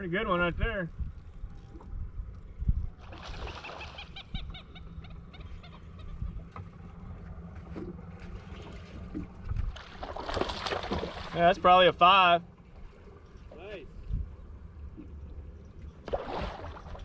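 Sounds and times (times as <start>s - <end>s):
wind and water rumble: 0.0s - 17.0s
bird calling: 3.0s - 7.2s.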